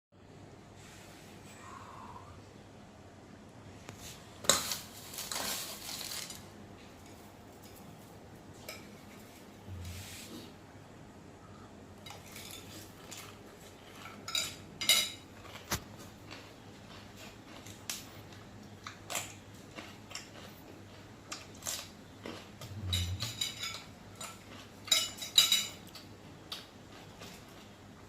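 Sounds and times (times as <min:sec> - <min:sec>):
utensils clinking against dishes: 0:12.0 - 0:15.8, 0:22.6 - 0:26.1.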